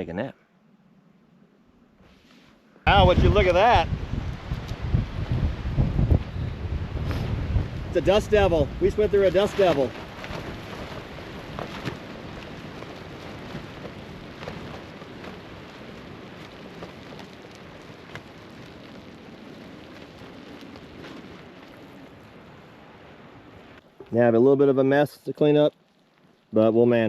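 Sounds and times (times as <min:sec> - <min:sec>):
wind rushing: 0:02.8 - 0:23.8
grit ticking against objects: 0:08.0 - 0:22.1.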